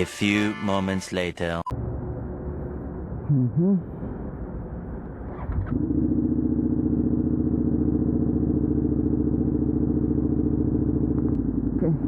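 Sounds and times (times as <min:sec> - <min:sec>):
motorcycle engine idling: 0:05.8 - 0:12.0.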